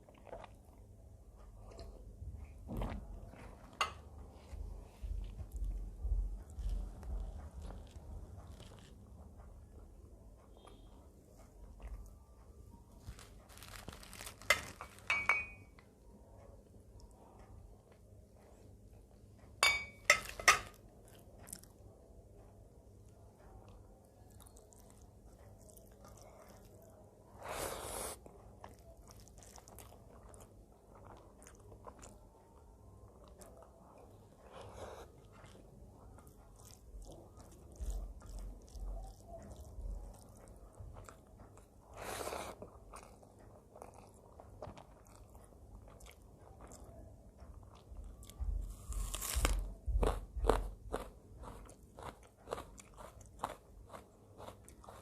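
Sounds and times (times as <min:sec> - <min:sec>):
person chewing: 0:00.0 - 0:02.1, 0:06.5 - 0:09.2, 0:24.2 - 0:55.0.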